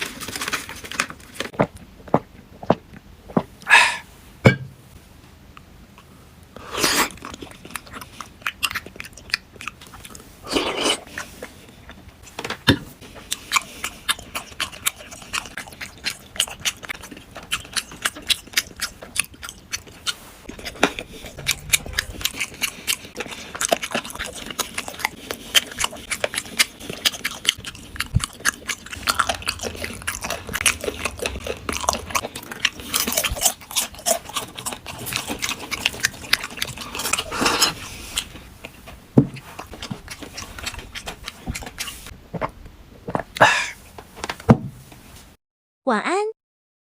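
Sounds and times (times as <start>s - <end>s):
person chewing crunchy snacks: 6.6s - 12.0s, 13.1s - 38.8s, 39.4s - 42.1s.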